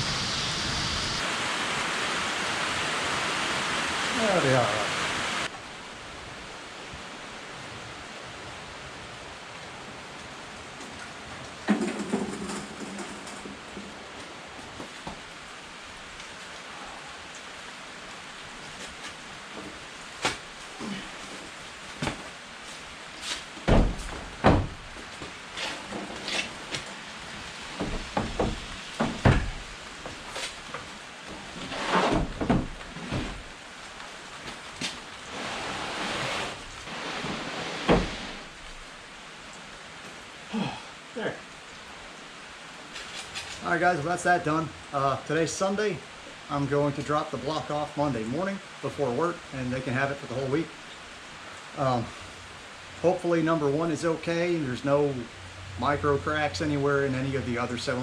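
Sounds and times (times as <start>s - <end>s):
steady rain falling: 0.0s - 58.0s
thumps and knocks: 11.7s - 13.9s, 23.6s - 24.9s, 27.7s - 33.4s.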